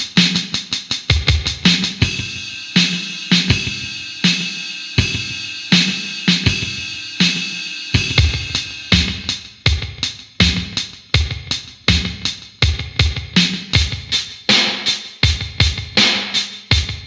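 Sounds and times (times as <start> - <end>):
electronic bass drum and snare: 0.0 - 17.0
ringing cymbals: 1.4 - 9.5.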